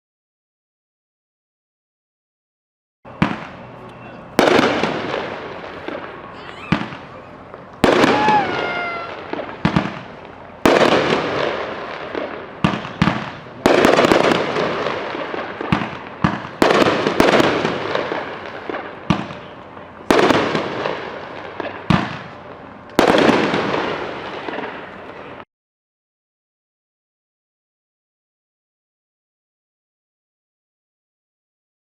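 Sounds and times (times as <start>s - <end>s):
firework bursts: 3.1s - 25.4s.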